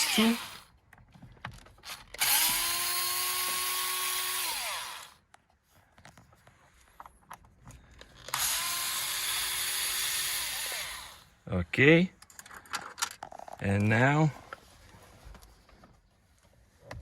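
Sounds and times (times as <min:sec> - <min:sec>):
electric screwdriver motor whine: 0:00.0 - 0:00.7, 0:01.9 - 0:05.2, 0:08.3 - 0:11.2.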